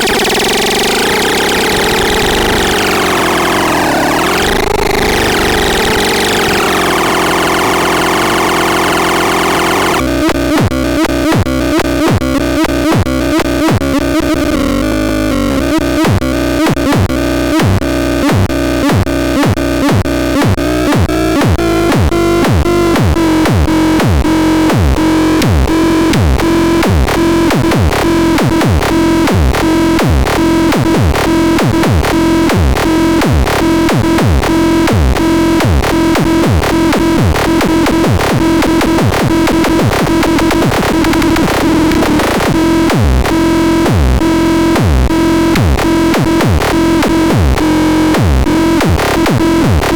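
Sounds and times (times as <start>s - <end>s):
synth downward pitch sweeps: 0.0s - 10.0s
buzzy synthesizer drone: 0.0s - 49.9s.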